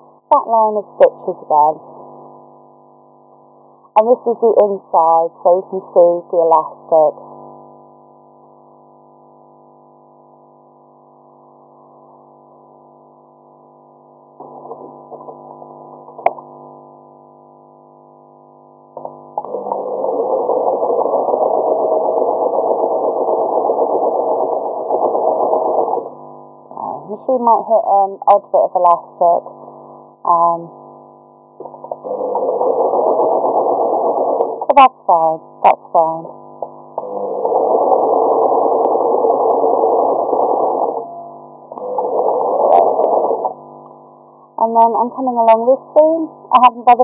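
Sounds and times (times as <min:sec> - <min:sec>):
sewing machine running: 0:19.4 - 0:26.0.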